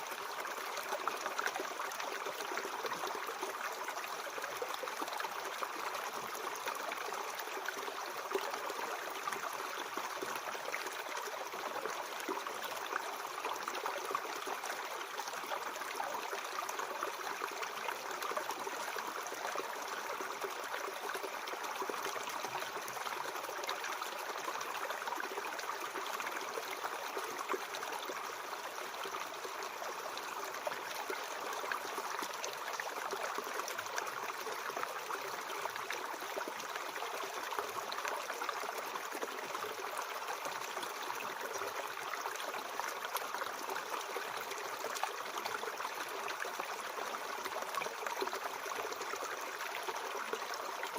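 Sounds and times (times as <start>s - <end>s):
stream flowing over rocks: 0.0s - 50.9s.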